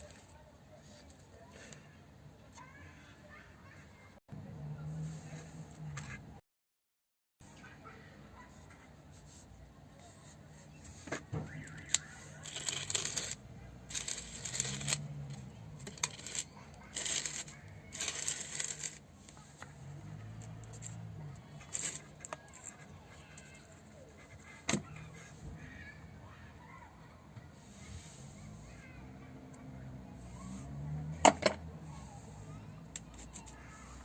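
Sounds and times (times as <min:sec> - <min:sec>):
metal tools clinking and scraping: 0:12.4 - 0:19.1, 0:20.4 - 0:23.7.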